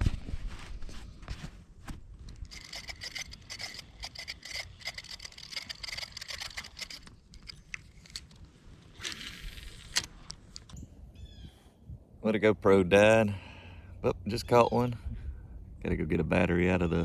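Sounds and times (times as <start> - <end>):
fishing reel whirring and clicking: 2.5 - 7.1, 9.0 - 10.1.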